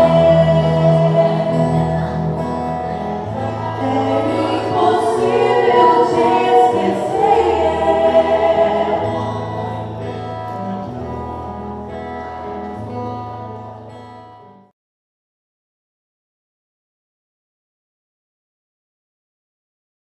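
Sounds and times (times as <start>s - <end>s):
choir singing: 0.0s - 2.3s, 3.2s - 9.9s.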